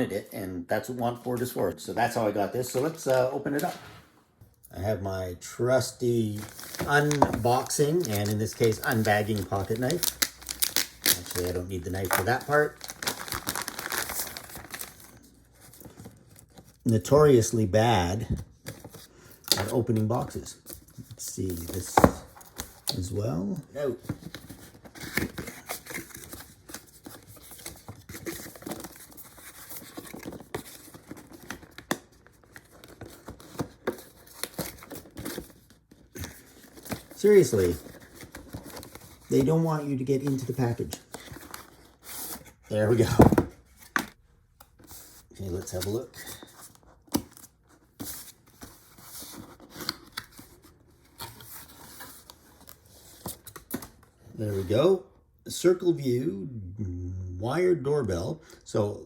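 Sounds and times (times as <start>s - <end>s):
packaging rustling and scraping: 6.2s - 16.8s, 24.0s - 44.2s
packaging tearing and crinkling: 6.4s - 15.1s.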